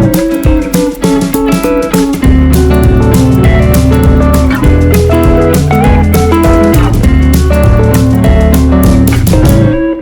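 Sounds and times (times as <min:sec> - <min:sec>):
bass: 0:00.0 - 0:10.0
plucked guitar music with beat: 0:00.0 - 0:10.0.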